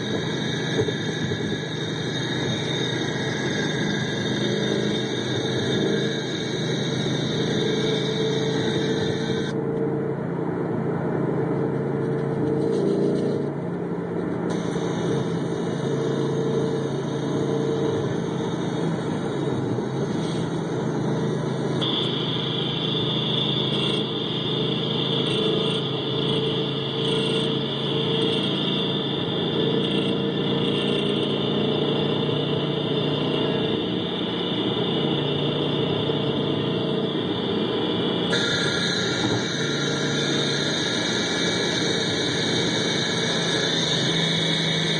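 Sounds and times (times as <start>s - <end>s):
car engine running close up: 0.0s - 44.9s.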